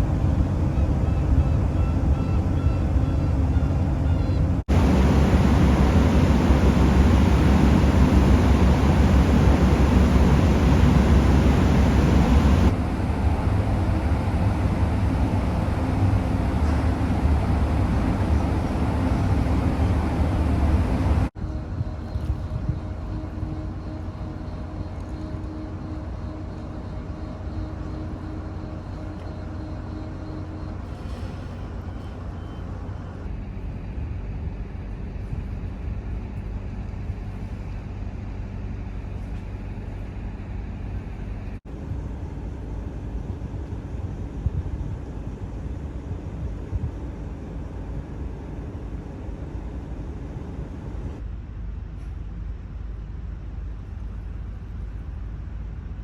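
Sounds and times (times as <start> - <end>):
low engine rumble: 0.0 - 25.4
faint hum: 0.0 - 30.8.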